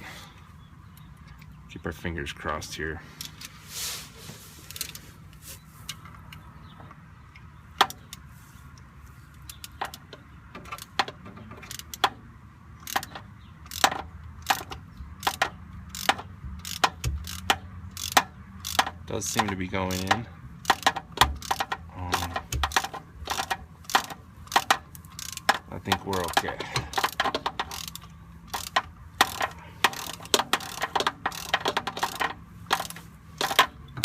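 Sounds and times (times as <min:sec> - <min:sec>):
hand ratchet clicking: 0:09.4 - 0:12.2, 0:12.8 - 0:34.0.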